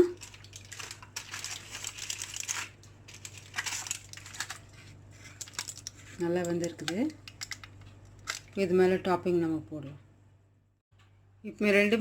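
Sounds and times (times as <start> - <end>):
aluminium foil crinkling: 0.0 - 8.6.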